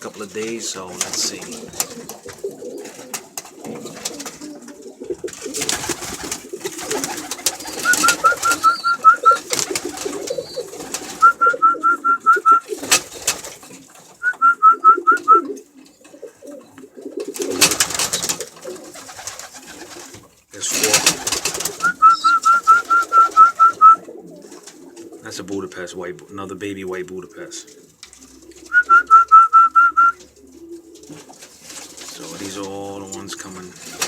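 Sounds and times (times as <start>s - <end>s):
wings flapping: 0.0s - 25.2s, 27.7s - 34.0s
pigeons cooing: 0.0s - 34.0s.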